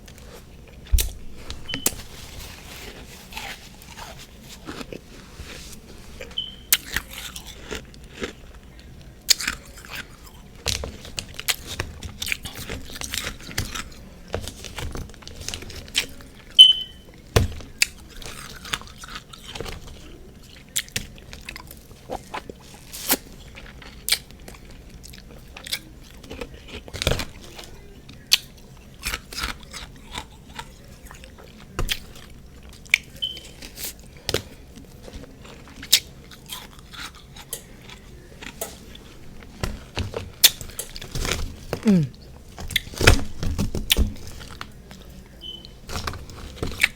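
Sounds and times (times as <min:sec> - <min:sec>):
crunching and chewing frost: 0:00.0 - 0:46.9.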